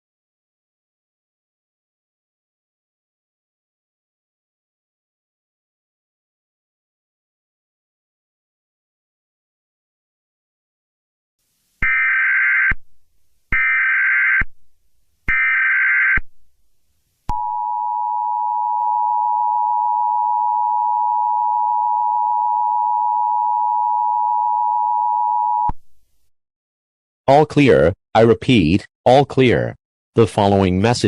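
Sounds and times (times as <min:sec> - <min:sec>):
screechy data tones: 0:11.8 - 0:12.8, 0:13.5 - 0:14.4, 0:15.3 - 0:16.2.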